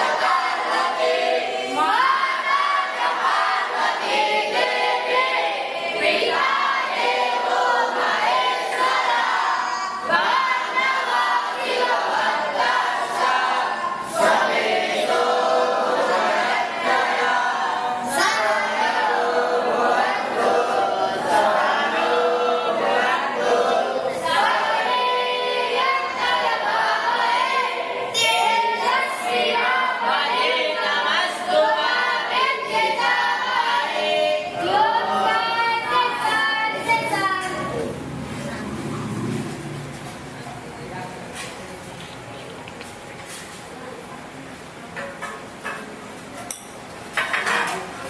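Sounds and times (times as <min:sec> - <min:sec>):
voices chanting in unison: 0:00.0 - 0:38.0.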